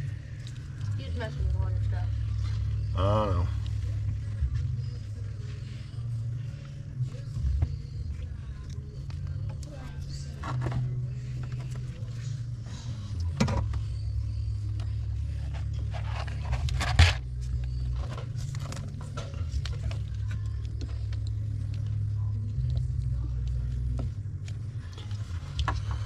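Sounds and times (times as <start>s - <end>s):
steady low hum: 0.0s - 26.0s
knocks and scrapes: 15.3s - 19.7s.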